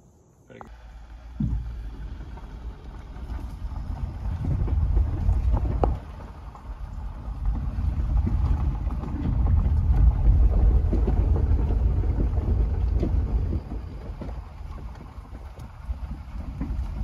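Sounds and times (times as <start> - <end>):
wind buffeting microphone: 1.3 - 17.0.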